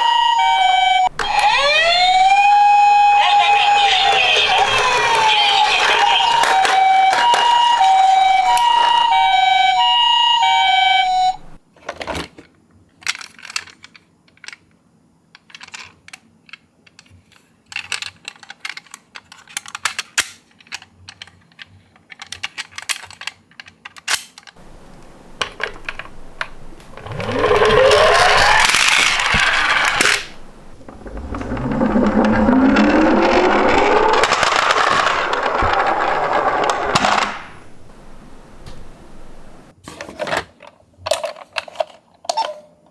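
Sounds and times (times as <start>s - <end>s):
toy cars rolling down a slope: 0.0s - 10.6s, 24.6s - 37.4s
two-tone ambulance siren: 0.0s - 11.6s, 25.6s - 34.9s
toy cars clicking and tapping: 1.1s - 9.3s, 11.8s - 30.4s, 32.8s - 37.3s.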